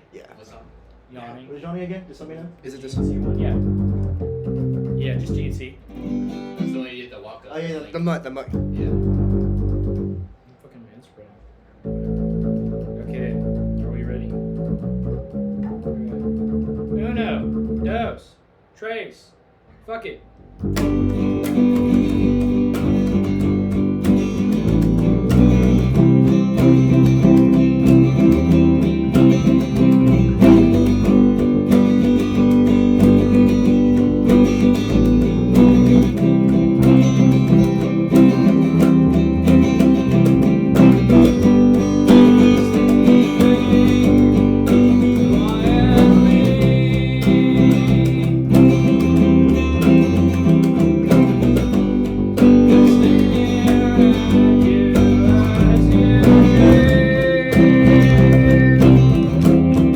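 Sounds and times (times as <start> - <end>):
band playing live: 20.6 - 59.9.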